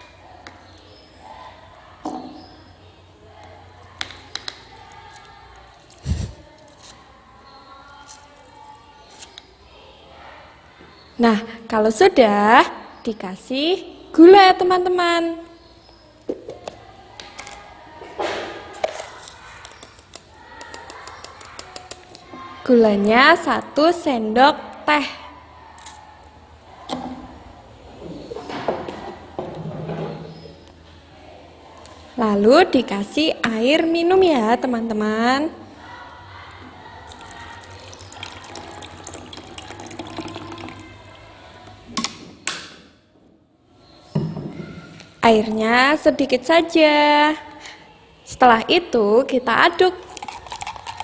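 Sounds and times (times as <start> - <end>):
water pouring into a glass: 37.1 - 41.3, 50.1 - 51.0.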